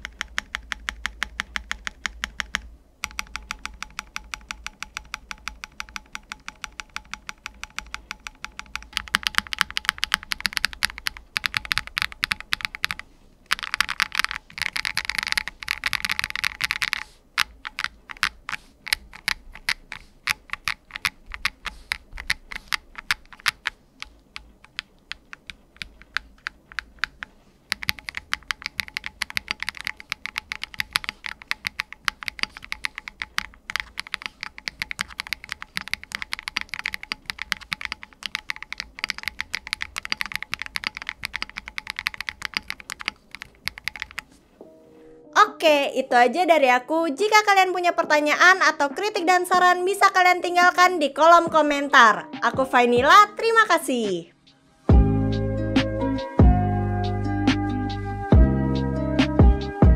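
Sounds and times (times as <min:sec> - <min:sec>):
mechanical keyboard key clicks: 0:00.0 - 0:44.2.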